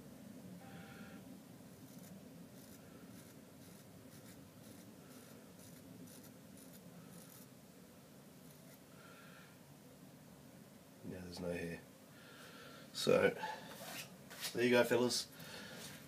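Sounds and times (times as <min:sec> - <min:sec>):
knife blade shaving hair: 0:01.9 - 0:07.5, 0:08.4 - 0:08.8.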